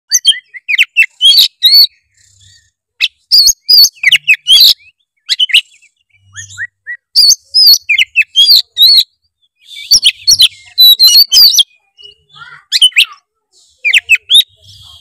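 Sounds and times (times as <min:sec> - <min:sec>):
bird singing whistles: 0:00.1 - 0:13.2, 0:13.8 - 0:15.0.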